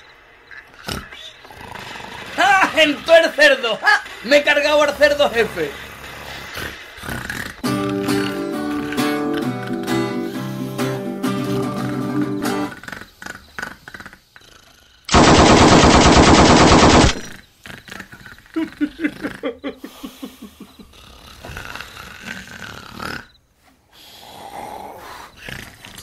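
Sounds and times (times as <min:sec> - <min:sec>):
rattling snore: 0:00.7 - 0:09.6, 0:12.5 - 0:15.2, 0:17.2 - 0:19.5, 0:20.7 - 0:26.0
pitched snorting: 0:00.8 - 0:11.0, 0:12.4 - 0:23.4.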